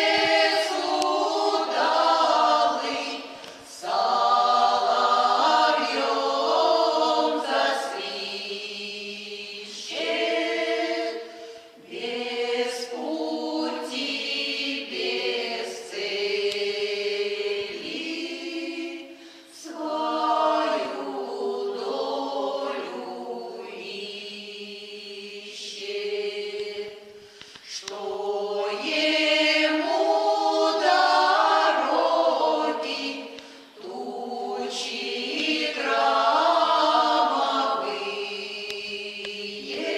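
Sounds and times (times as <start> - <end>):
choir singing a cappella: 0.0 - 39.9.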